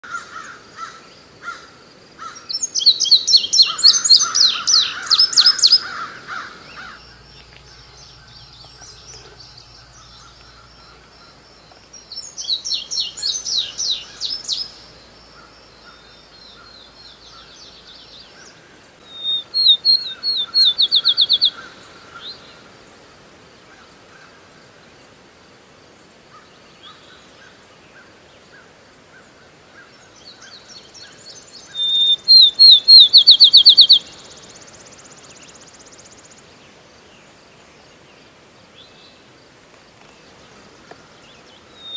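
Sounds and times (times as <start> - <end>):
songbird trilling: 0.0 - 22.4, 30.2 - 36.1, 41.2 - 41.9
quiet bird chirps: 0.0 - 25.3, 25.9 - 41.9.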